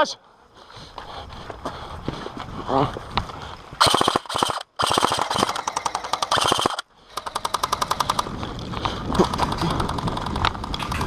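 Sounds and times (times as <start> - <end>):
airsoft rifle firing full auto: 3.8 - 8.3.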